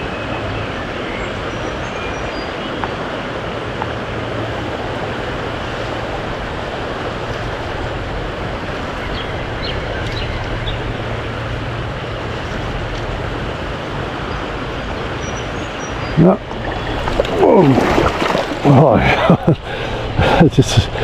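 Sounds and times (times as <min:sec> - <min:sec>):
fast-flowing river rushing: 0:02.4 - 0:15.2, 0:15.8 - 0:19.0.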